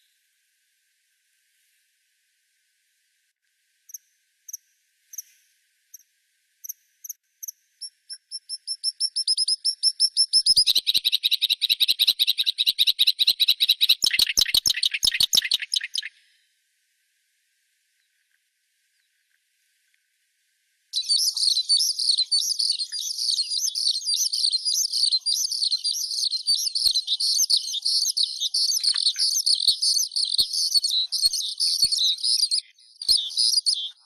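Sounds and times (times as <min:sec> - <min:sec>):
songbird singing trill: 0:06.6 - 0:16.4, 0:21.0 - 0:34.0.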